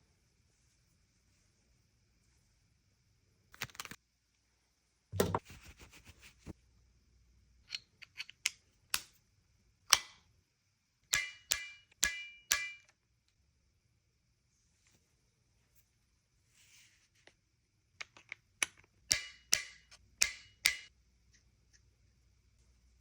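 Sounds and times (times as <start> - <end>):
pistol clicks and snaps: 7.7 - 9.1
metallic ring: 11.1 - 12.9.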